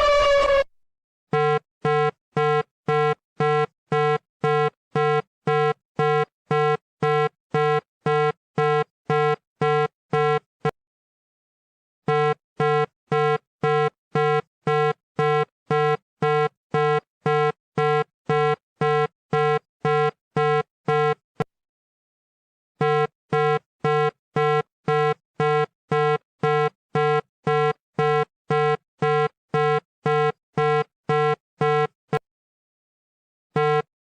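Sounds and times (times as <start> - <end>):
buzzy electronic warning beep: 0.0 - 0.7.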